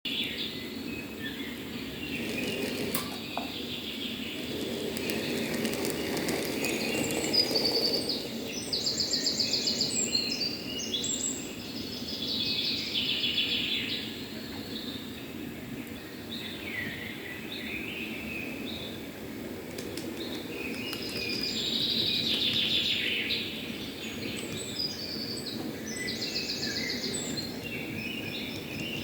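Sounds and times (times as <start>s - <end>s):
songbirds singing: 0.1s - 29.0s.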